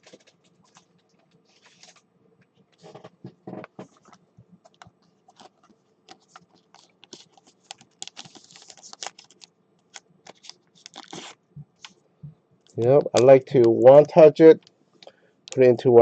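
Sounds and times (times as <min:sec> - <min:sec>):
plastic card sleeve crinkling: 0:00.0 - 0:02.0, 0:03.8 - 0:12.0.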